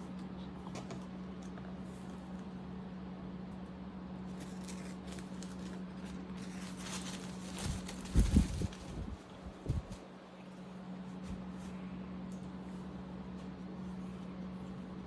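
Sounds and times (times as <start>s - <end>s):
steady low hum: 0.0s - 15.0s
soft rustling: 4.4s - 11.8s.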